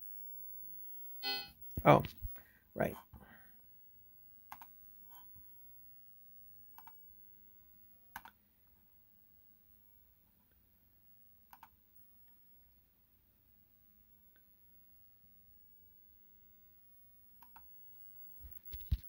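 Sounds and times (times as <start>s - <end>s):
computer mouse clicking: 4.5s - 4.7s, 6.8s - 7.0s, 8.1s - 8.4s, 11.5s - 11.8s, 17.4s - 17.7s.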